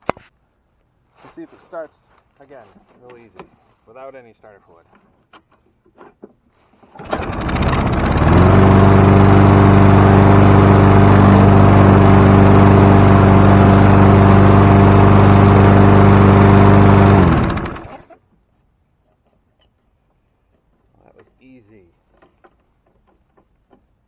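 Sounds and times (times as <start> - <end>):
lawn mower engine running: 7.0 - 18.0.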